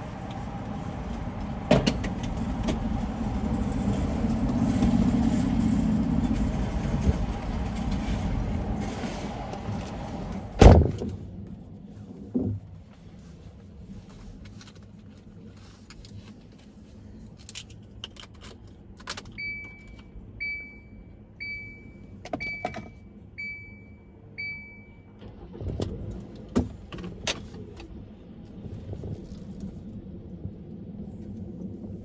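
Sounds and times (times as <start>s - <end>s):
road and engine rumble: 0.0s - 32.0s
electronic warning chime beeps: 19.4s - 25.0s.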